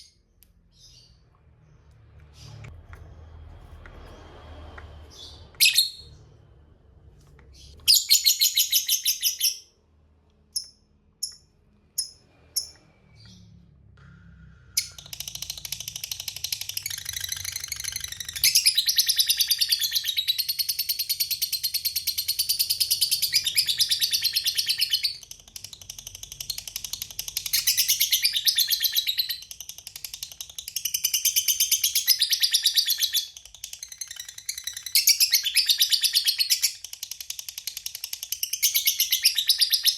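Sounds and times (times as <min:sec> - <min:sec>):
lovebird single chirps: 0:05.1 - 0:06.2.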